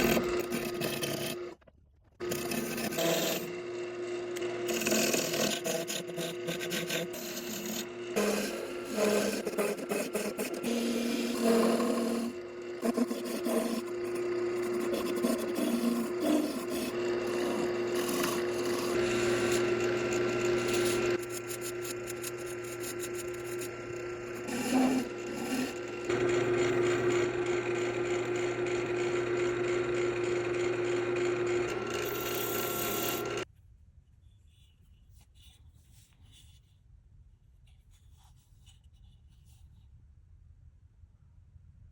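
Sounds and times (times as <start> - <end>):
rasping and rubbing on wood: 0.0 - 1.4, 2.2 - 3.6, 4.4 - 33.4
wood lathe motor hum: 0.0 - 1.6, 2.2 - 33.5.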